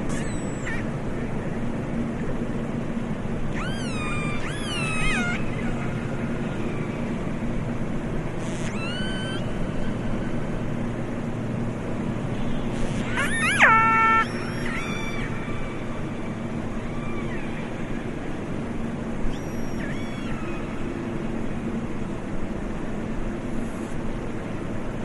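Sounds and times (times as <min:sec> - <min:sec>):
killer whale calls: 0:03.5 - 0:07.4, 0:08.4 - 0:09.8, 0:12.7 - 0:18.1, 0:19.3 - 0:21.3.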